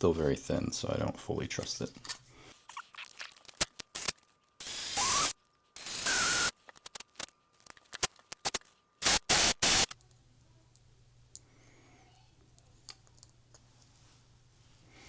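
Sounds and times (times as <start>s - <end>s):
small parts clicking: 3.4s - 10.0s.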